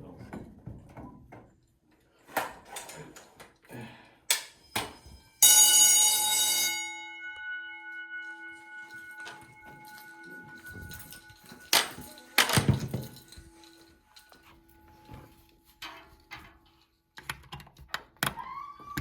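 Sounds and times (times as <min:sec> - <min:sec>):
fire alarm bell ringing: 0:04.3 - 0:16.8
metal gong ringing: 0:05.4 - 0:14.0.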